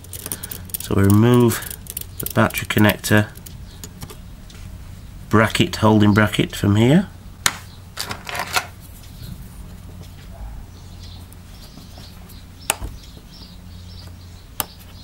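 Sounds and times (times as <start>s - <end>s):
screwdriver clicks on metal parts: 0.0s - 4.2s
low electrical hum: 0.0s - 15.0s.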